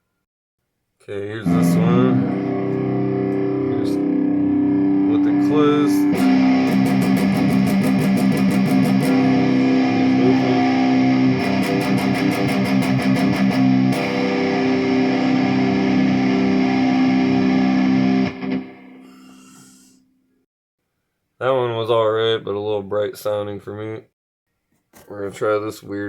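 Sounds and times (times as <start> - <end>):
distorted electric guitar: 1.4 - 19.1.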